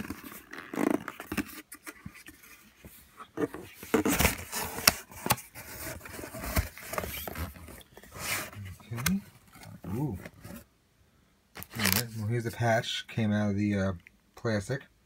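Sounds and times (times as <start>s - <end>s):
packaging being opened by hand: 3.3s - 10.6s, 11.6s - 12.2s.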